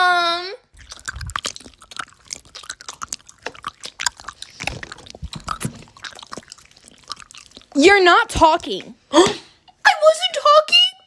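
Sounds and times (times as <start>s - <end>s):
chewing crunches and clicks: 0.7s - 7.8s.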